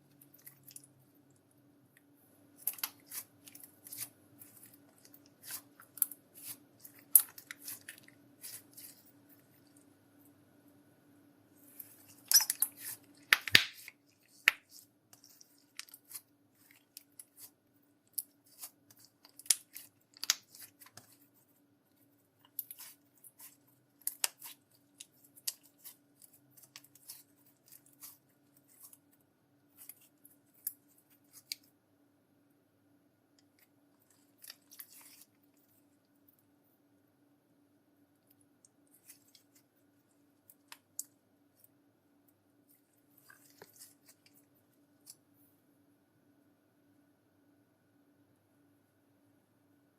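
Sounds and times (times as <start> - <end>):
slime squishing by hand: 0.0 - 10.4, 11.6 - 31.8.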